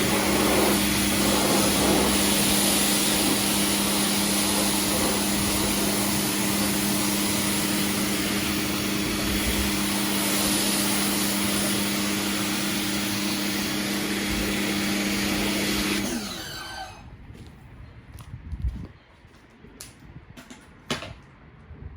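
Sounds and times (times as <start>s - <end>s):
pressure washer spraying: 0.0s - 17.0s
motor winding down: 0.0s - 17.1s.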